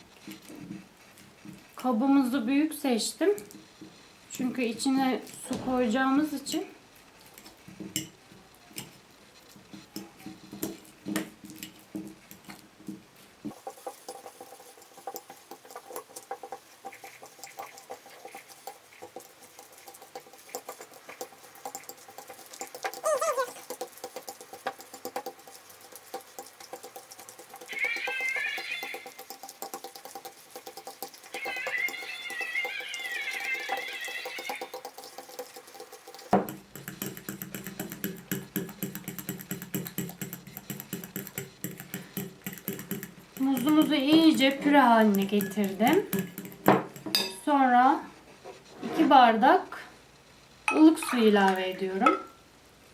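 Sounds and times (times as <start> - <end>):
fork tapping against bowl: 9.9 - 47.4.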